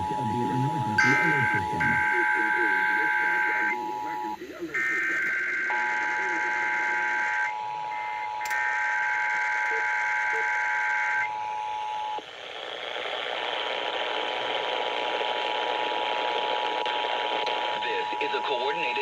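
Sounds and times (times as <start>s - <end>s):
two-tone attention signal: 0.0s - 11.5s
warbling digital data bursts: 0.0s - 15.6s
radio hiss: 0.0s - 19.0s.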